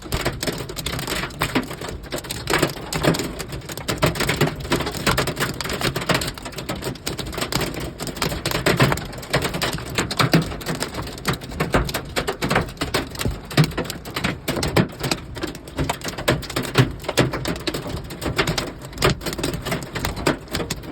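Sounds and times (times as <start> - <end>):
hail and heavy rain clattering: 0.0 - 20.9.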